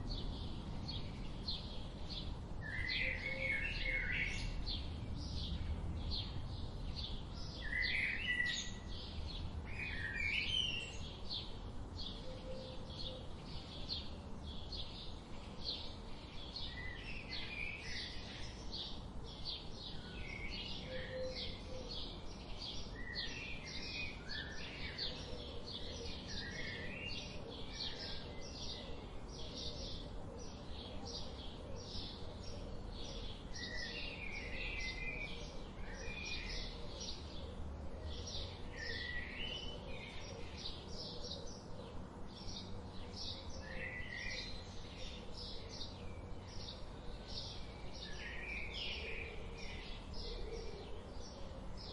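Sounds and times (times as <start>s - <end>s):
faint low background rumble: 0.0s - 10.2s
birds chirping and singing: 0.0s - 51.9s.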